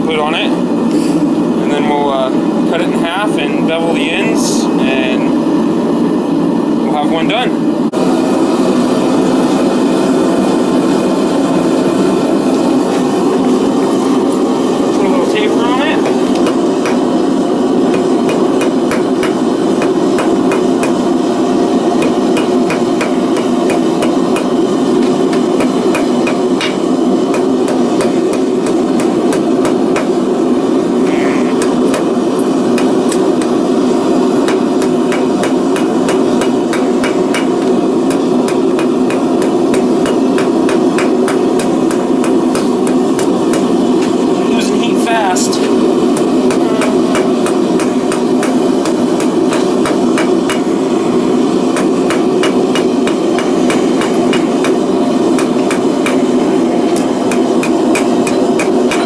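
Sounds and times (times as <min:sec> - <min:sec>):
forge roaring: 0:00.0 - 0:59.0
hammer striking steel on anvil: 0:16.0 - 0:17.2, 0:17.9 - 0:21.2, 0:21.9 - 0:30.2, 0:31.6 - 0:33.6, 0:34.4 - 0:44.3, 0:45.5 - 0:59.0.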